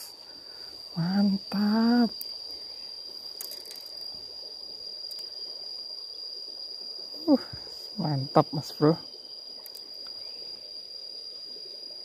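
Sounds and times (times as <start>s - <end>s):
high-pitched insect trill: 0.0s - 12.0s
faint clicks: 9.6s - 10.2s.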